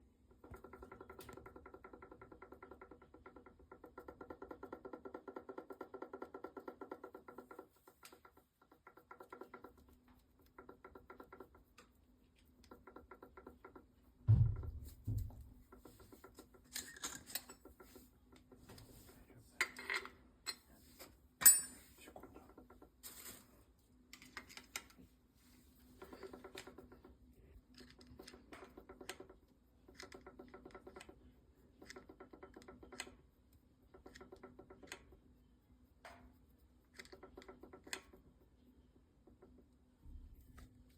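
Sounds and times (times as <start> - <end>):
low thump: 14.3 - 15.6.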